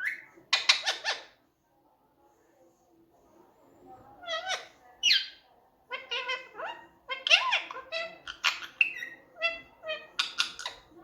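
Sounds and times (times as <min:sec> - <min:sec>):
parakeet chattering: 0:00.0 - 0:01.3, 0:04.2 - 0:11.0.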